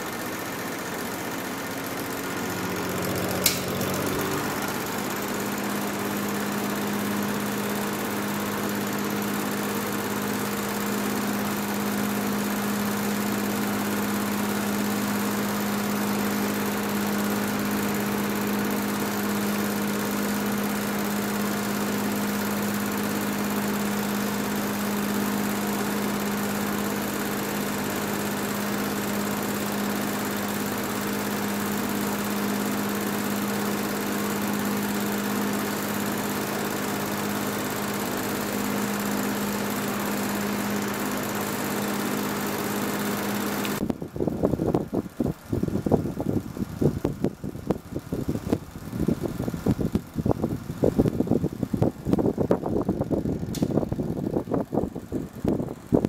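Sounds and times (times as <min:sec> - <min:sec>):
box fan motor humming: 0:00.0 - 0:56.0
sharp switch click: 0:03.4 - 0:03.8.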